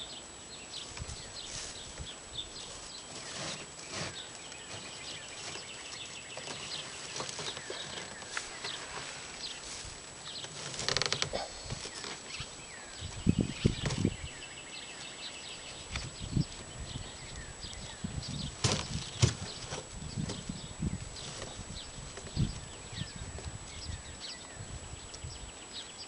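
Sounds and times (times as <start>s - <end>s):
hay rustling: 0.8s - 14.4s
knocks and scraping: 0.9s - 12.5s, 18.2s - 20.6s
high chirping calls: 11.3s - 26.0s.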